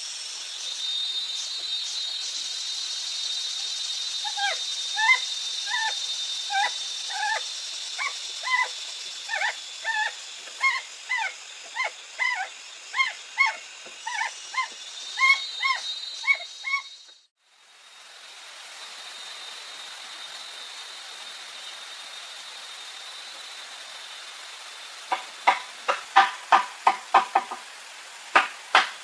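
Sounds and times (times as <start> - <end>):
jungle insects droning: 0.0 - 29.0.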